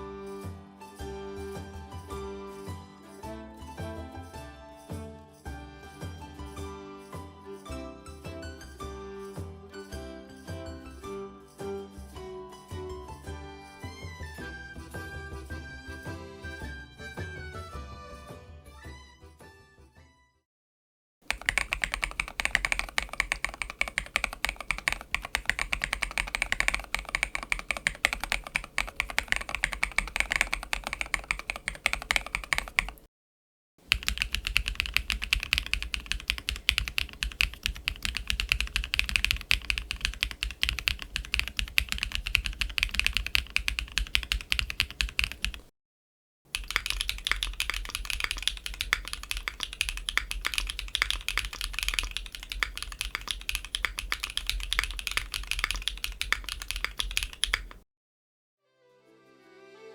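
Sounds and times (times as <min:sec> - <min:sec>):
mechanical keyboard typing: 0:21.3 - 0:33.1, 0:33.8 - 0:45.7, 0:46.5 - 0:57.8.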